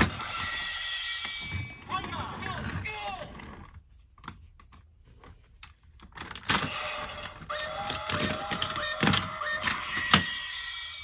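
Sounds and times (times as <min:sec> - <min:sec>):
plastic toy parts clicking: 0:06.0 - 0:10.4.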